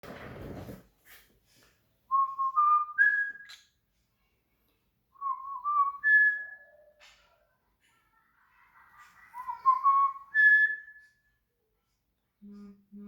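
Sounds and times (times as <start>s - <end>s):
person whistling: 2.1s - 3.6s, 5.2s - 6.9s, 9.4s - 11.2s.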